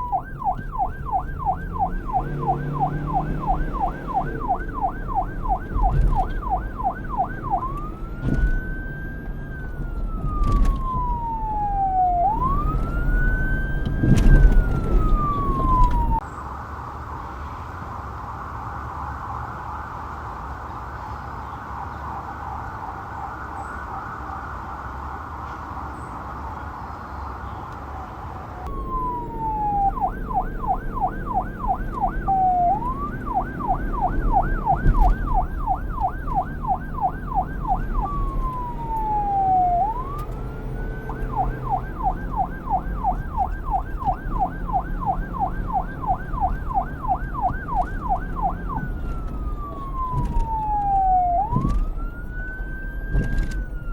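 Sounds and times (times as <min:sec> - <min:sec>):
rapid siren warble: 0:00.0 - 0:16.2, 0:28.6 - 0:53.9
police siren yelp and wail: 0:00.0 - 0:16.3, 0:18.2 - 0:26.8, 0:27.8 - 0:53.9.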